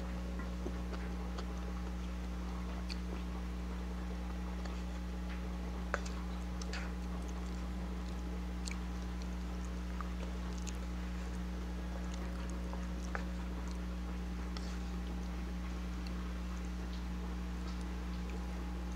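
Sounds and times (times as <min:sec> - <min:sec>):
steady low hum: 0:00.0 - 0:18.9
person chewing: 0:00.3 - 0:18.5.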